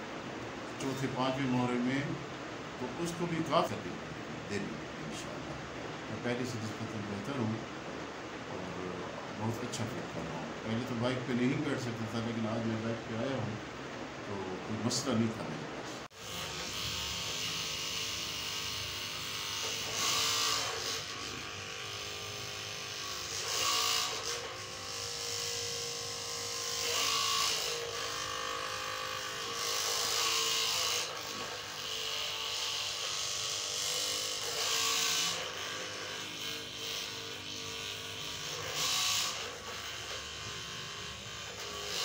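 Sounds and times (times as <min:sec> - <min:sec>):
small electric motor buzzing: 0:16.0 - 0:42.0.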